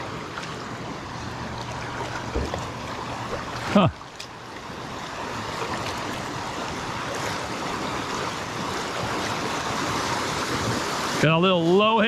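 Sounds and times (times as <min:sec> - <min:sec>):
river water rushing over dam: 0:00.0 - 0:12.0.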